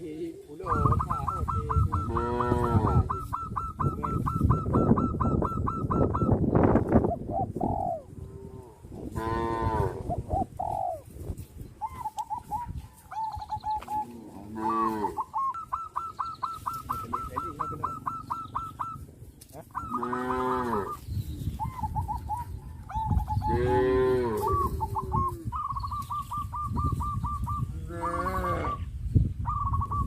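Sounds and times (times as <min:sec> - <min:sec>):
rapid repeated high calls: 0:00.7 - 0:06.6, 0:11.8 - 0:23.5
cattle mooing: 0:14.3 - 0:15.2, 0:19.9 - 0:21.0, 0:23.5 - 0:24.5, 0:27.8 - 0:28.8.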